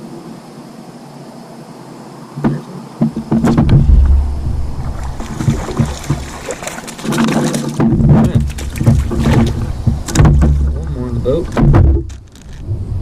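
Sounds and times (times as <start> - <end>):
knocks against kayak hull: 2.4 - 12.6
water splashing: 2.4 - 12.7
wind rumble on microphone: 2.4 - 13.0.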